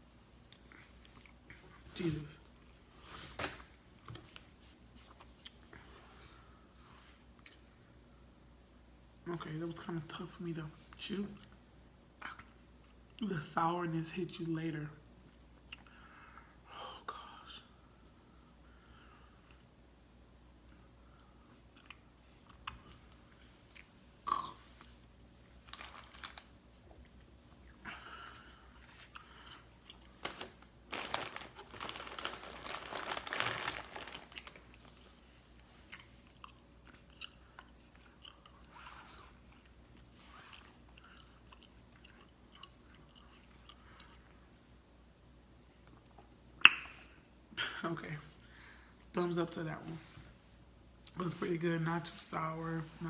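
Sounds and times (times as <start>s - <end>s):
person chewing gummy candy: 35.9s - 44.5s
wet mouth clicks and smacks: 46.6s - 47.0s.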